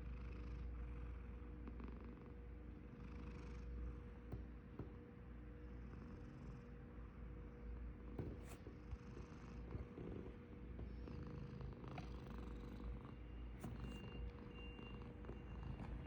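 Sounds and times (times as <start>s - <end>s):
cat snoring: 0.0s - 4.2s, 5.7s - 6.8s, 8.4s - 16.0s.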